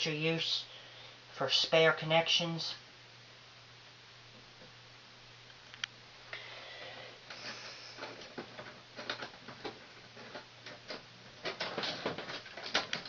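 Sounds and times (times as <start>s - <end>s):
wires rustling: 5.4s - 13.0s
small clicks of wires and tool: 5.5s - 6.0s.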